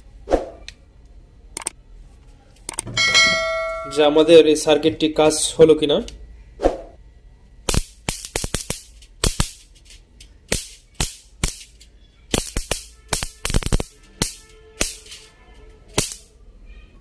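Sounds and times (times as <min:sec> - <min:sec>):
electric racket sparking snaps: 0:07.6 - 0:15.3, 0:15.9 - 0:16.3.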